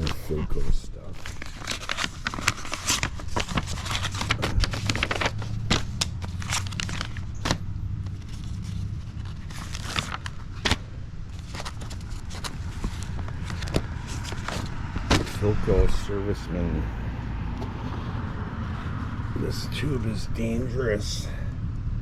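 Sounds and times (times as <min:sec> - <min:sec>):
paper pages rustling: 0:00.0 - 0:15.8
sharp paper clicks: 0:01.2 - 0:15.3.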